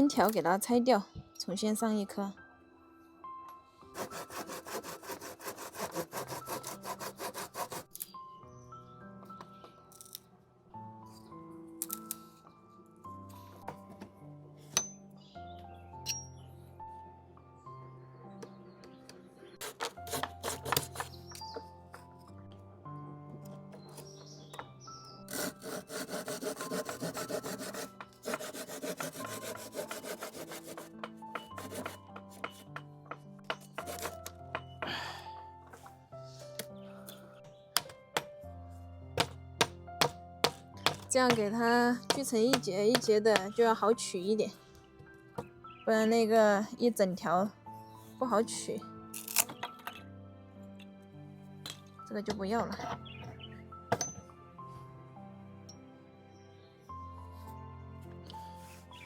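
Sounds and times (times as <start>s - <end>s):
hand saw cutting wooden board: 4.0s - 8.0s, 19.6s - 21.2s, 25.3s - 32.6s, 33.7s - 34.3s.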